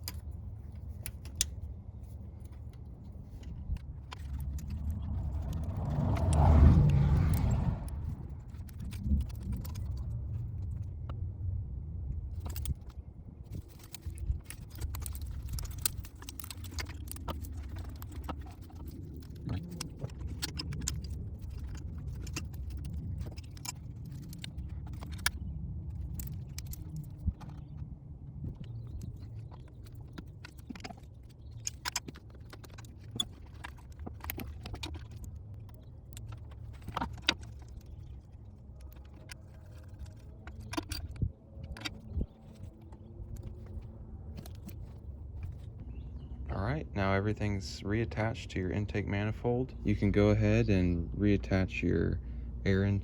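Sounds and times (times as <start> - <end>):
steady low hum: 0.0 - 53.0
metallic clicks of tools: 12.3 - 27.6.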